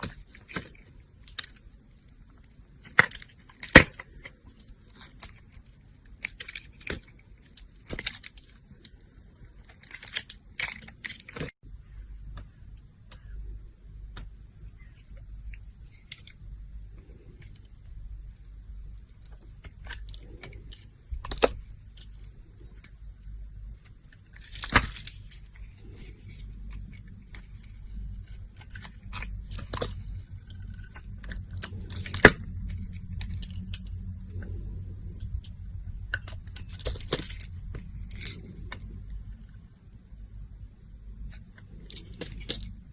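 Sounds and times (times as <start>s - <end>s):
low steady hum: 0.0s - 42.9s.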